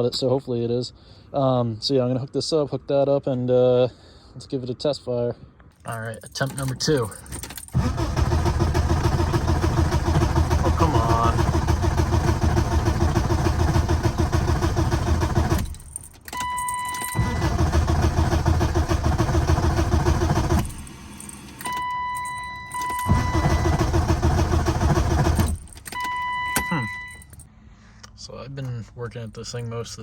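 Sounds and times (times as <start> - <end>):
car engine cranking: 5.9 - 27.4
steady electronic beep: 21.7 - 23.6, 26.0 - 27.3.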